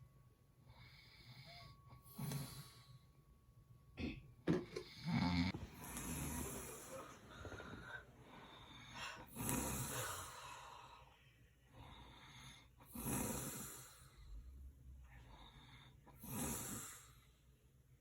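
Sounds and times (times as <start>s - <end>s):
quiet breathing: 0.0s - 3.5s, 4.6s - 18.0s
person snoring: 4.8s - 10.4s, 12.9s - 14.2s, 16.1s - 17.2s.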